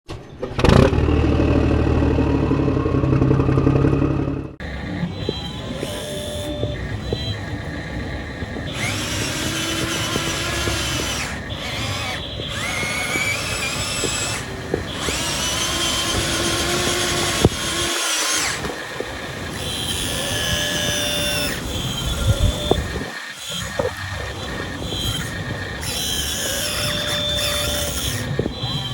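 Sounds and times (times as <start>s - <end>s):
low engine-like hum: 0.2s - 8.9s
electric motors and hydraulic whine: 4.6s - 28.9s.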